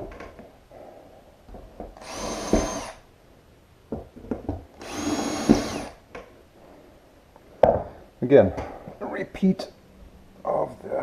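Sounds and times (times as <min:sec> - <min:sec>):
power drill motor whine: 0:02.0 - 0:03.0, 0:04.8 - 0:06.0.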